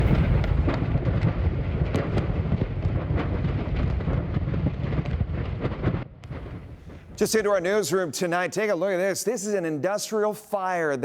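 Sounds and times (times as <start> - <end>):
fire burning with rumble: 0.0 - 7.8
small explosions popping: 0.0 - 7.8.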